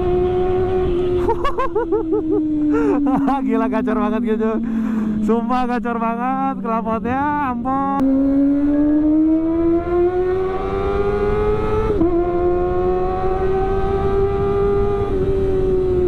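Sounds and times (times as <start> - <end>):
motorcycle engine at high revs: 0.0 - 3.3, 7.9 - 16.0.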